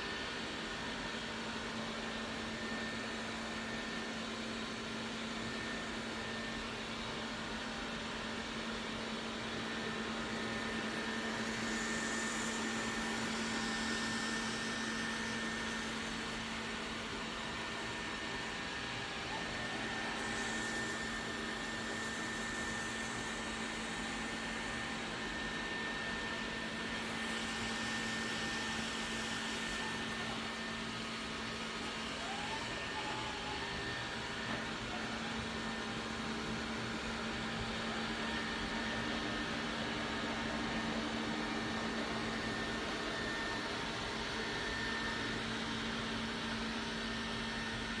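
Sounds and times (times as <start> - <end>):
robot vacuum cleaner running: 0.0 - 48.0.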